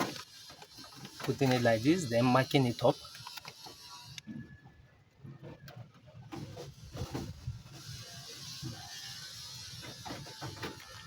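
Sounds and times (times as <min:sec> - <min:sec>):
small parts clicking and knocking: 0:02.9 - 0:04.3.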